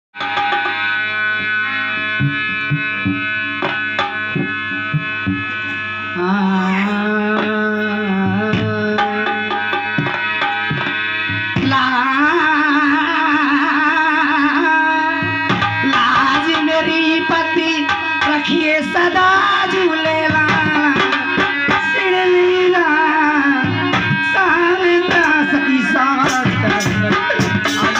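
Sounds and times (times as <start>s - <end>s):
reedy sustained chords: 0.3s - 27.9s
hand drum strokes: 2.2s - 12.4s, 15.2s - 27.9s.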